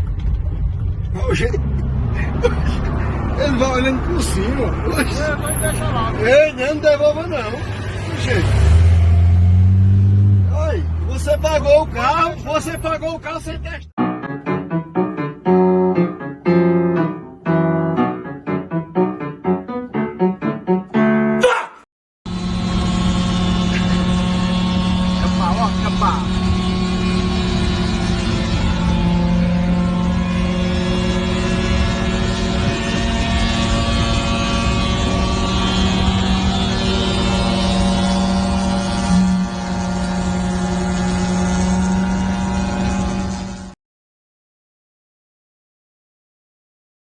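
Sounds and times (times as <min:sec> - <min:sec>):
piano music: 0:14.0 - 0:21.4
motor droning: 0:22.3 - 0:43.7.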